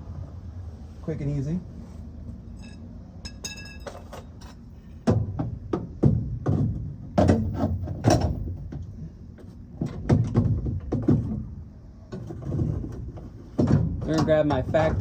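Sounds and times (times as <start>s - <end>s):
metal tools knocking and clunking: 2.6s - 8.9s, 12.1s - 15.0s.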